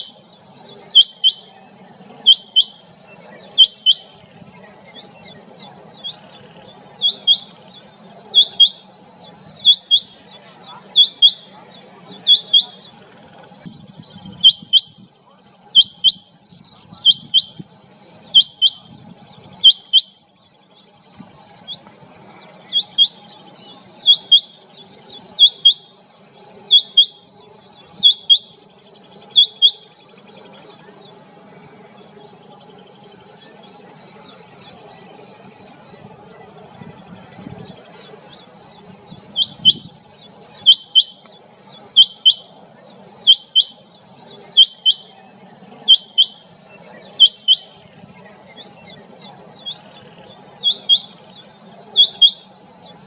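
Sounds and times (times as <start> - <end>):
quail two-note calls: 0.9 - 1.6, 2.2 - 2.8, 3.5 - 4.2, 7.0 - 7.5, 8.3 - 8.9, 9.6 - 10.3, 10.9 - 11.5, 12.2 - 12.8, 15.8 - 16.2, 18.4 - 18.9, 19.6 - 20.2, 22.7 - 23.2, 24.0 - 24.6, 25.4 - 25.9, 26.7 - 27.3, 28.0 - 28.6, 29.3 - 29.9, 39.4 - 39.9, 40.6 - 41.2, 41.9 - 42.5, 43.3 - 43.8, 44.6 - 45.1, 45.9 - 46.4, 47.2 - 47.7, 50.6 - 51.1, 52.0 - 52.5.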